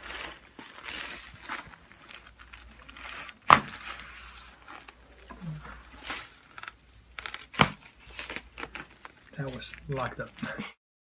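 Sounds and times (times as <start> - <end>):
rustling and crinkling: 0.0 - 10.8.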